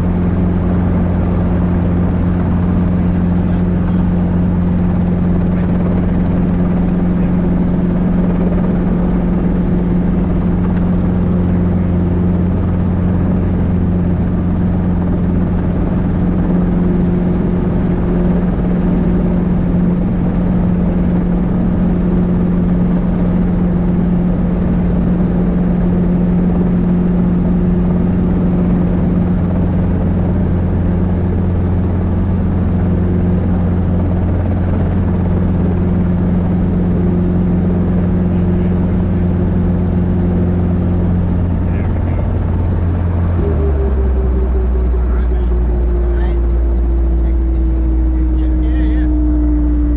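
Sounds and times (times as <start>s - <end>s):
helicopter running: 0.0s - 49.9s.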